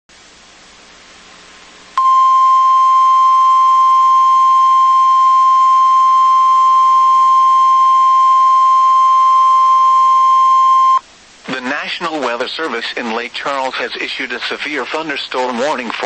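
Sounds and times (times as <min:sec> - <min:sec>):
low radio hiss: 0:00.1 - 0:16.0
steady warning alarm beep: 0:02.0 - 0:11.0.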